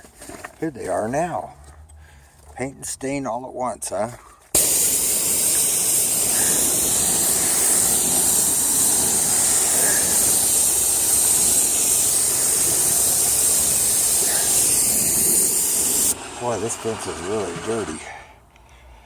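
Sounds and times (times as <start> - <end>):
high-pressure spray on wood fence: 4.6 - 18.0.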